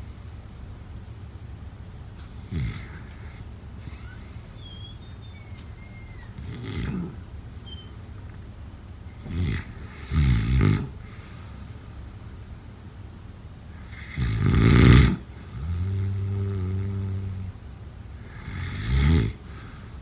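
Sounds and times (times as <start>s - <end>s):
person snoring: 2.4s - 4.2s, 13.8s - 17.6s, 18.3s - 19.5s.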